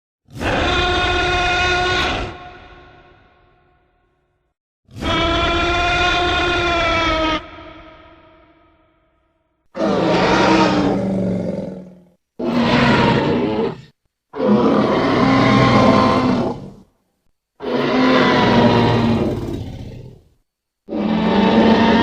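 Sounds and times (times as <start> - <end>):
dinosaur roaring: 0.3 - 3.1, 9.8 - 16.9, 17.6 - 20.3, 20.9 - 22.0.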